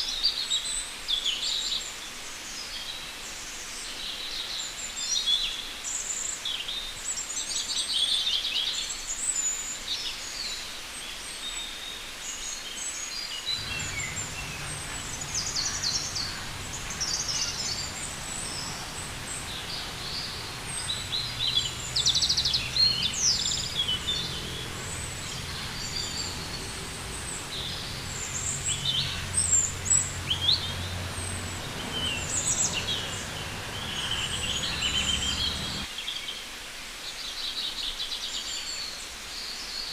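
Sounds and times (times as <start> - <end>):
birds chirping and trilling: 13.5 - 35.9
low steady rumble: 13.6 - 35.9.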